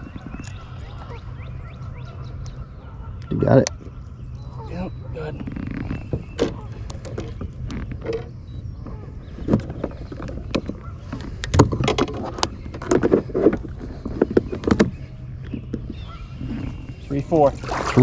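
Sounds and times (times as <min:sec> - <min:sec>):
knocks and clatters on a boat: 0:00.0 - 0:00.7, 0:05.1 - 0:18.0
steady low hum: 0:00.0 - 0:18.0.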